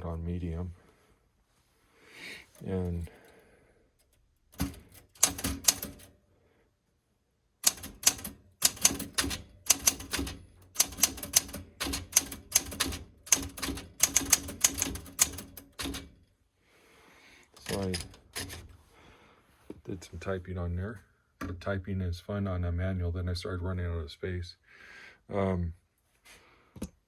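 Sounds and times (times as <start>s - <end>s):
manual typewriter key clacks: 4.6s - 6.1s, 7.6s - 16.2s, 17.6s - 18.7s.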